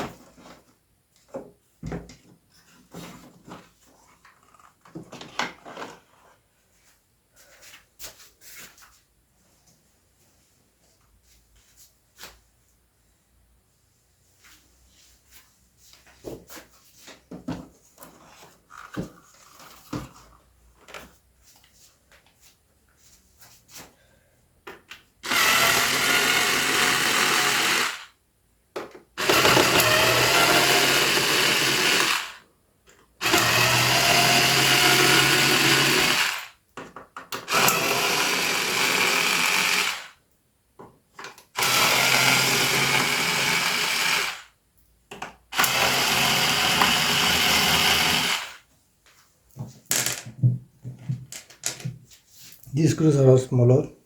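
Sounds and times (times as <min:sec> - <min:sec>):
electric screwdriver running: 0:25.2 - 0:28.1, 0:29.2 - 0:32.4, 0:33.2 - 0:36.5, 0:37.4 - 0:40.2, 0:41.6 - 0:44.5, 0:45.6 - 0:48.6.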